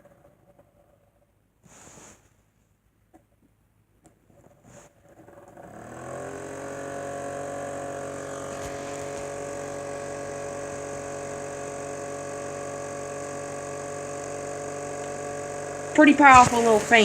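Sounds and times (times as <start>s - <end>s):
fan motor whirring: 4.3s - 17.0s.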